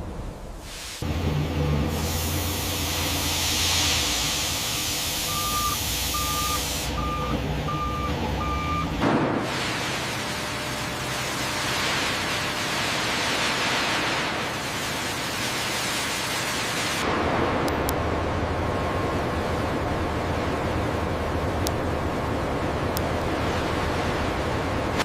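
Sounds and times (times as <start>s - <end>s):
low engine rumble: 0.0s - 9.0s, 17.0s - 25.0s
loud machinery noise: 1.0s - 25.0s
vehicle reversing alarm beeping: 4.6s - 9.0s.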